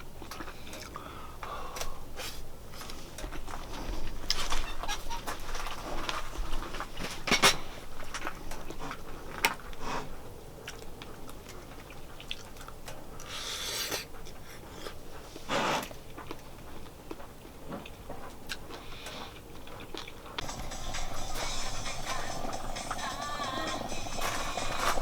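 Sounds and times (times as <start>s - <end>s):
utensil scraping: 20.4s - 25.0s.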